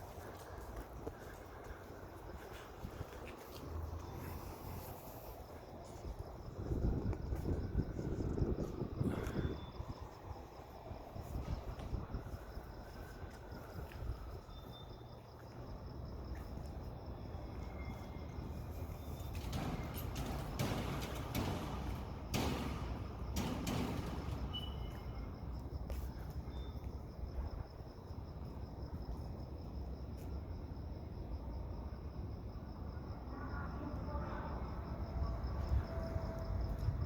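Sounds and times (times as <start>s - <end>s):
wind rumble: 0.0s - 29.2s
crickets chirping: 0.0s - 37.0s.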